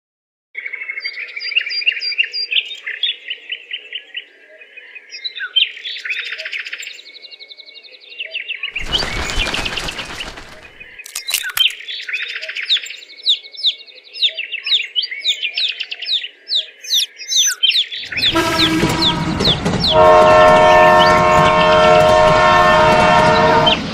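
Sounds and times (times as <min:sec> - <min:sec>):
small birds chirping and trilling: 0:00.6 - 0:21.8
loud rushing noise: 0:08.8 - 0:10.9
sharp click: 0:11.0 - 0:11.8.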